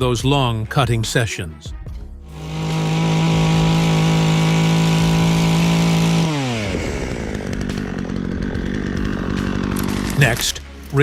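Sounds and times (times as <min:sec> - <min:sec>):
chainsaw running: 0:02.2 - 0:11.0.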